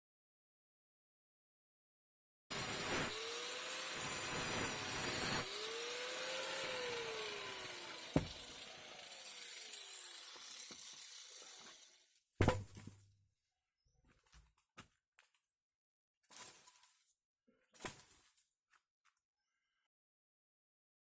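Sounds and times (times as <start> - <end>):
angle grinder cutting wood: 2.5 - 12.1
loud thump: 8.2 - 8.4.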